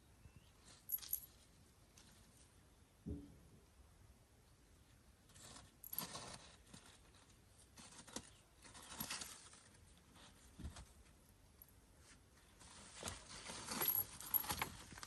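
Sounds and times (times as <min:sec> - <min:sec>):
faint rustling and crackling: 0:04.8 - 0:15.0.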